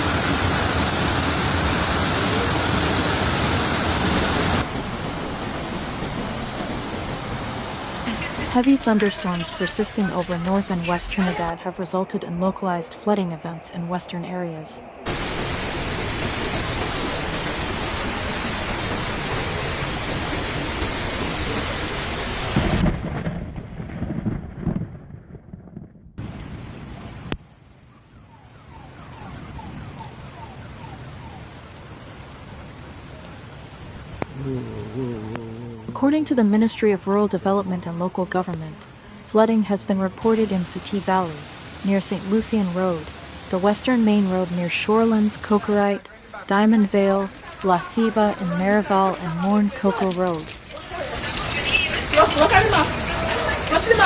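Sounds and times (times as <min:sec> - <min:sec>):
heavy rain pouring: 0:00.0 - 0:13.2, 0:15.0 - 0:23.2, 0:29.2 - 0:54.0
water rushing: 0:00.0 - 0:22.8, 0:30.4 - 0:54.0
low uneven rumbling: 0:33.7 - 0:37.3.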